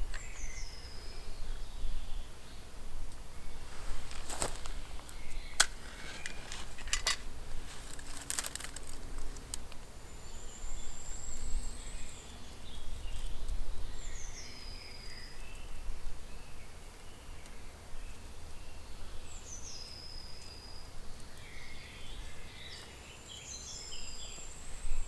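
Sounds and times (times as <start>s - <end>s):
dry sticks cracking: 3.6s - 9.9s.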